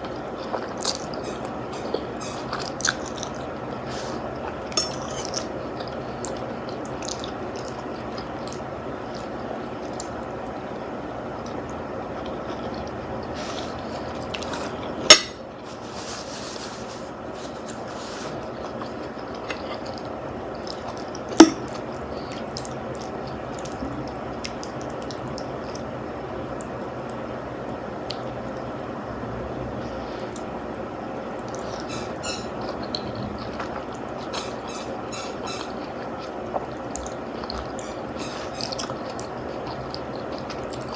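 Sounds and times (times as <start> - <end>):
steady background hum: 0.0 - 40.9
wet chewing mouth sounds: 5.4 - 10.7, 31.4 - 40.9
high squeaky sounds: 31.8 - 32.6, 34.3 - 35.8.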